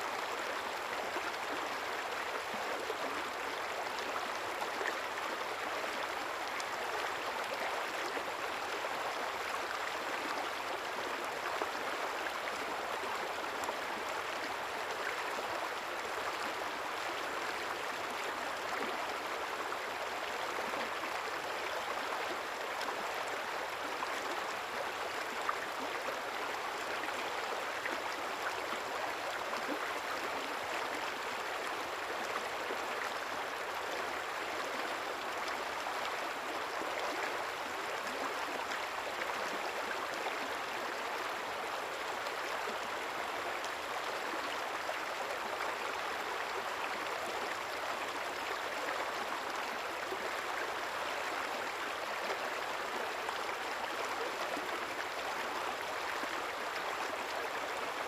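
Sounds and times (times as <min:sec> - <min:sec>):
river water flowing: 0:00.0 - 0:58.0.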